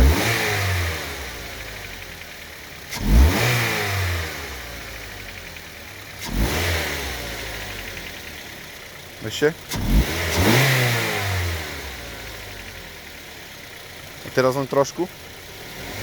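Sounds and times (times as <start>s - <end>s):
car engine revving: 0.0s - 16.0s
engine knock: 1.2s - 3.4s, 4.5s - 6.2s, 7.2s - 10.6s, 11.7s - 15.8s.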